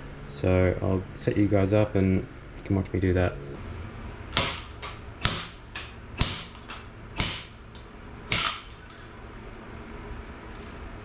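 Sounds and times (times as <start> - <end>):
sharp metal knocks: 4.3 - 9.2.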